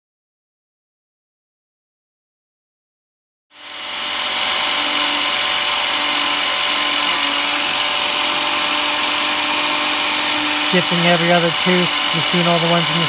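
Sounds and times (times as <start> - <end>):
grinding wheel motor whining: 3.6 - 13.0.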